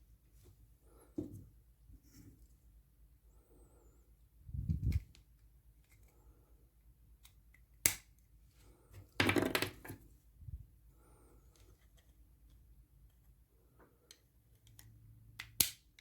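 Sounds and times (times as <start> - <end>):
plastic items knocking: 9.1 - 10.0.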